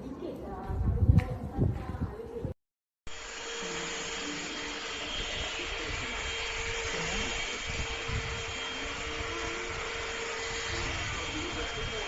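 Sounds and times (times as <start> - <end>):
stick vacuum cleaner running: 3.1 - 12.0.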